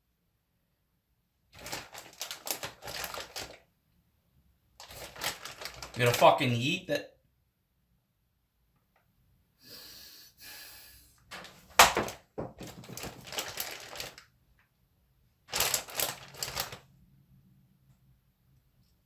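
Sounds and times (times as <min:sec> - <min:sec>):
frozen tater tots clattering: 0:04.8 - 0:06.3, 0:12.0 - 0:14.2, 0:15.5 - 0:16.8.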